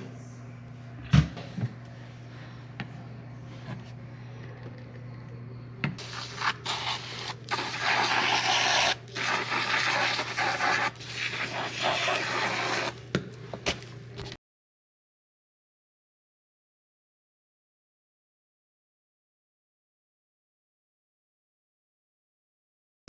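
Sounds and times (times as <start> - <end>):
rough rubbing and scraping: 6.0 - 13.0.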